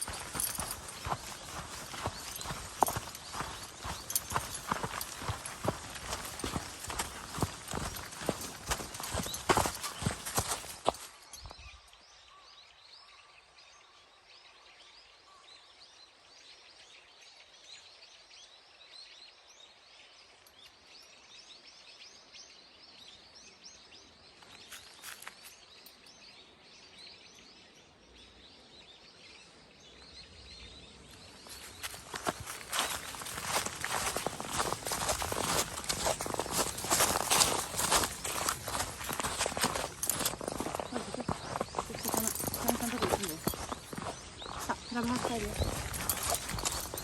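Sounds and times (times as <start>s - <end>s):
footsteps on snow: 0.0s - 11.6s, 31.1s - 47.0s
small birds chirping: 0.0s - 12.2s, 20.3s - 47.0s.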